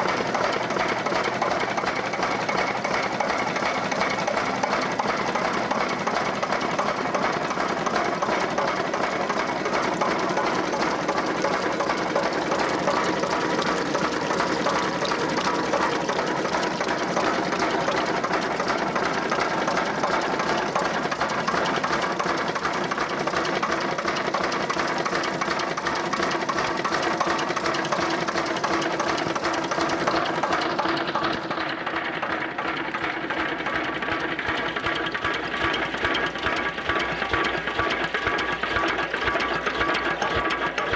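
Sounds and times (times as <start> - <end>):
diesel engine knocking: 0.0 - 40.9.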